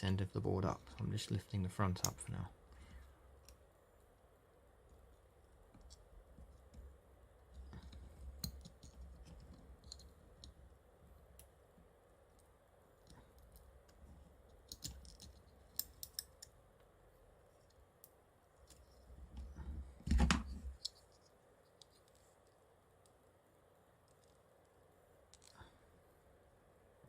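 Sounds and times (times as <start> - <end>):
small clicks and taps of tools: 7.5 - 10.6, 14.6 - 16.9, 20.7 - 23.2, 25.3 - 25.7.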